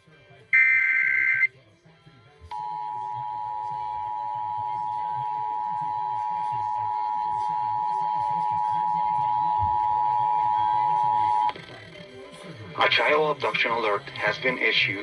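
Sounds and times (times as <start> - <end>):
two-tone alert signal: 0.6 - 1.5.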